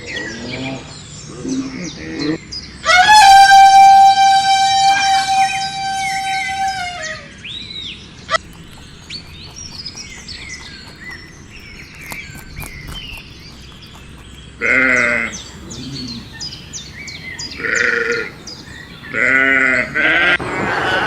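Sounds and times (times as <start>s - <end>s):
high bird chirps: 8.4s - 20.0s
animal bleating: 8.5s - 21.0s.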